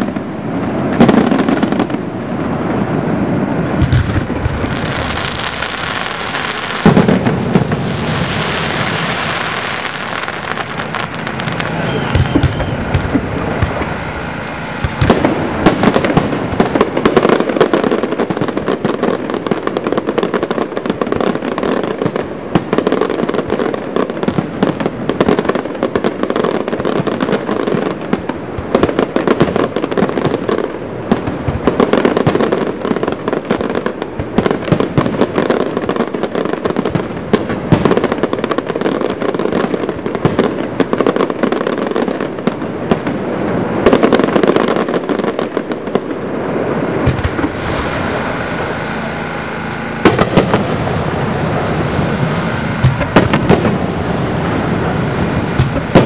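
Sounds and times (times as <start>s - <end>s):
fireworks bangs and crackling: 0.0s - 56.0s.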